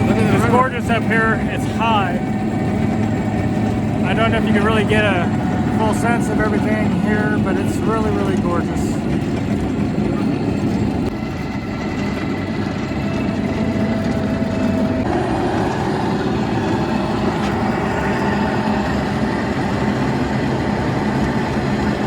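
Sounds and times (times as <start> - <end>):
cable car mechanical drone: 0.0 - 22.0.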